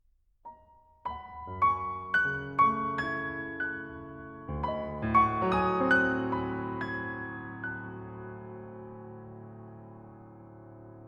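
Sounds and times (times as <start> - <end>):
soft solo piano music: 0.5 - 11.0.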